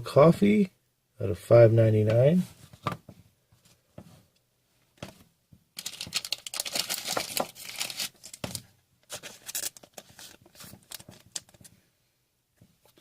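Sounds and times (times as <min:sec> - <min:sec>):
wrapper tearing and crinkling: 0:05.8 - 0:11.6.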